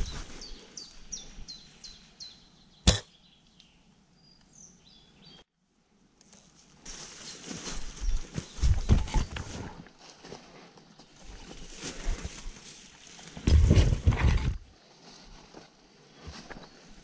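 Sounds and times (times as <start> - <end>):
bird chirping: 0.0 - 5.5
rustling: 6.2 - 17.0.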